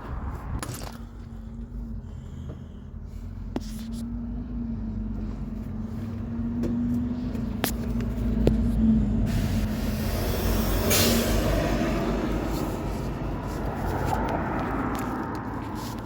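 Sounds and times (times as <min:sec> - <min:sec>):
car engine rumbling: 0:00.0 - 0:16.0
rushing noise: 0:09.2 - 0:16.0.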